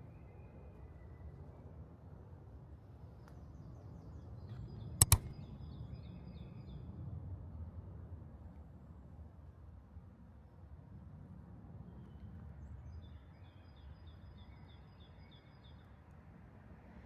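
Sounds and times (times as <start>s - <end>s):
sharp clicks: 5.0s - 5.4s.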